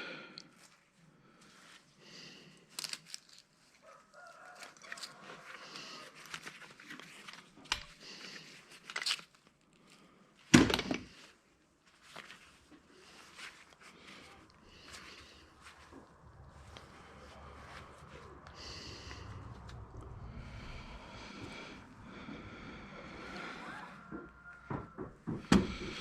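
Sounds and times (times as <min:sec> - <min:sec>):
clicks and rustling of handled gear: 0:02.6 - 0:03.9, 0:04.5 - 0:14.2.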